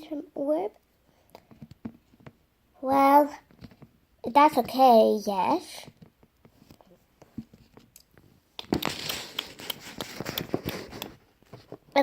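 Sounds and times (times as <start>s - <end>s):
rustling: 5.8s - 12.0s.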